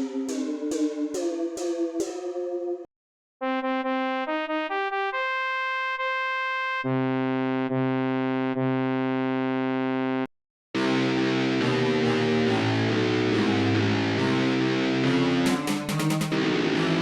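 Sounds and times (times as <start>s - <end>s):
plucked synth notes: 0.0s - 2.9s, 10.8s - 17.0s.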